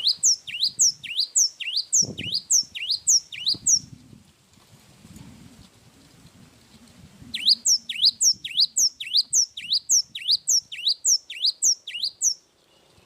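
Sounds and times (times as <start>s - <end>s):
songbird whistling: 0.0s - 3.9s, 7.3s - 13.0s.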